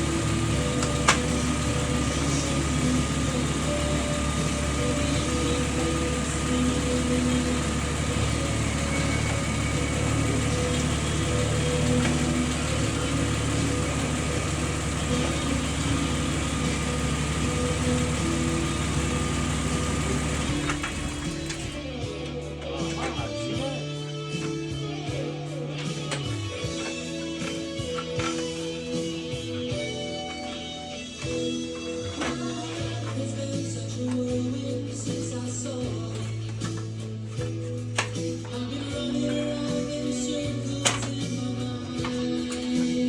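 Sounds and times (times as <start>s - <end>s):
car engine idling: 0.0s - 21.9s
engine cutting out: 0.0s - 21.9s.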